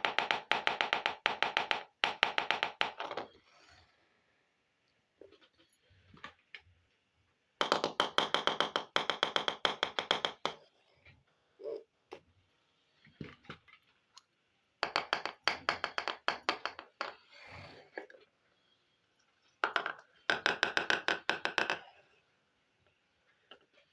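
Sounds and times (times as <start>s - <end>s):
plastic toy pieces tapping: 7.6s - 10.6s, 14.8s - 17.2s, 19.6s - 21.8s.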